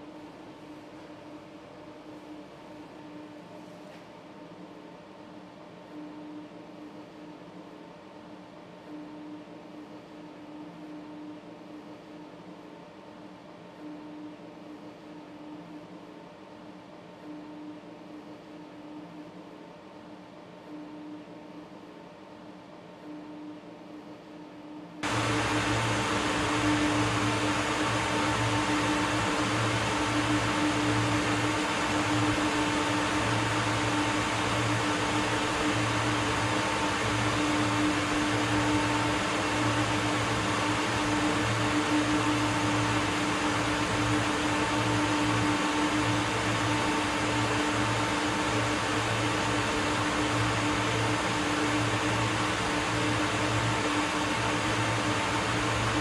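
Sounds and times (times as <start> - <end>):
industrial machinery humming: 25.0 - 56.0.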